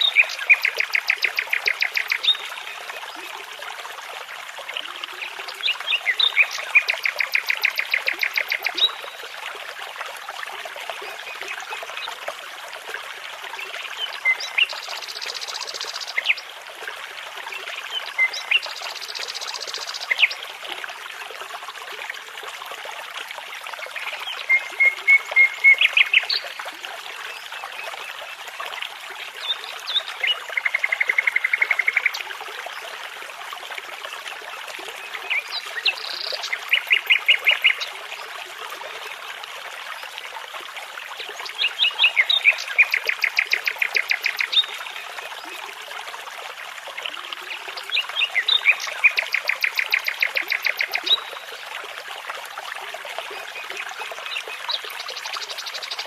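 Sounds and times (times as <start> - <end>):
babbling brook: 0.0 - 56.0
songbird singing: 5.7 - 9.1.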